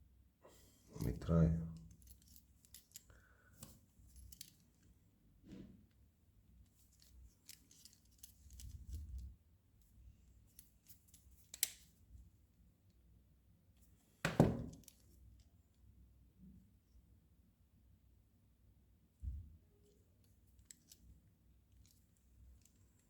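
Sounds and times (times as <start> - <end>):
small metal parts clicking: 1.8 - 3.2, 4.1 - 4.6, 6.9 - 9.1.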